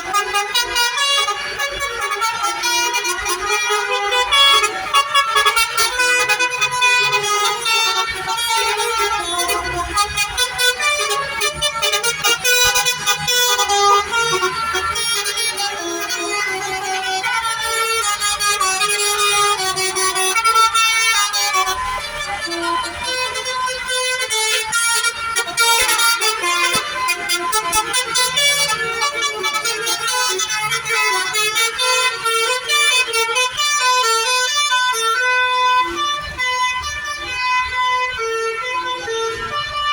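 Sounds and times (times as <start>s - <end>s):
bus engine rumble: 0.0s - 39.9s
multi-tone bus horn melody: 0.0s - 39.9s.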